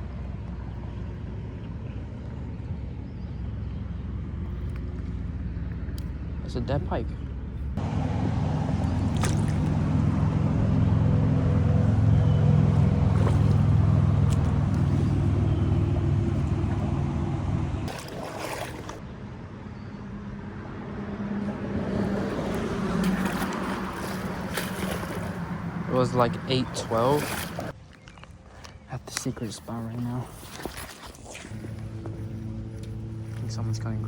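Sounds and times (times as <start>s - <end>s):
lawn mower engine running: 7.8s - 19.0s.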